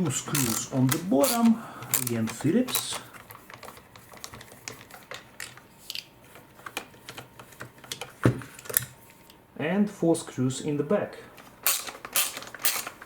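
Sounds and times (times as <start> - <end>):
screwdriver clicks and ticks: 0.4 - 3.0, 11.6 - 13.0.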